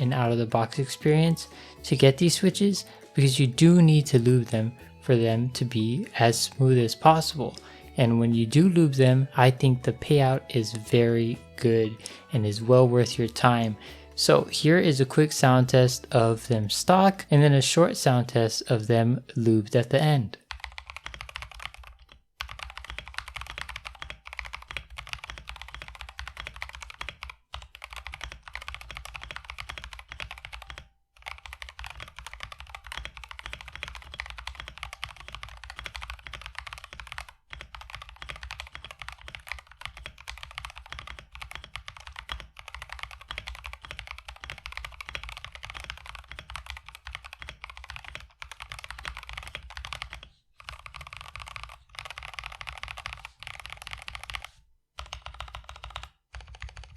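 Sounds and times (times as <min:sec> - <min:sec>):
mechanical keyboard typing: 0:20.4 - 0:56.9.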